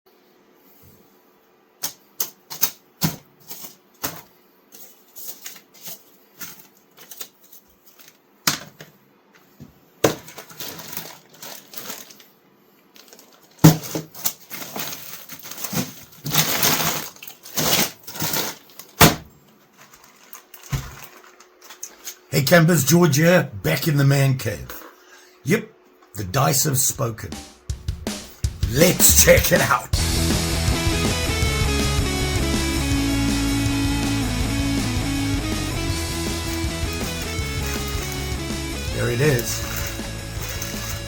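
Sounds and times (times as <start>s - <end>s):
small hard objects clattering: 10.1s - 12.2s, 13.0s - 19.0s, 19.7s - 22.3s, 35.9s - 41.0s.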